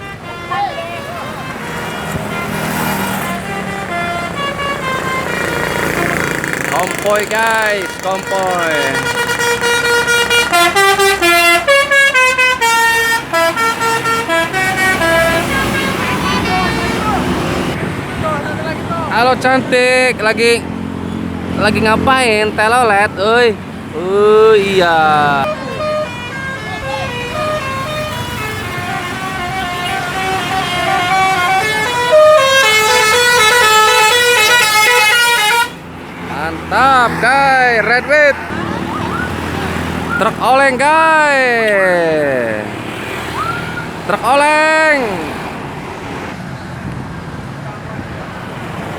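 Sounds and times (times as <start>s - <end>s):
bus horn playing a melody: 0.0s - 17.8s, 24.6s - 36.0s.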